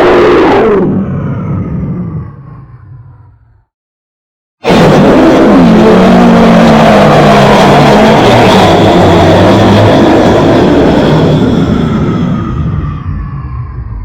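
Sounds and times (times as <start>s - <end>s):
monster roar: 0.0s - 3.2s, 4.6s - 14.0s.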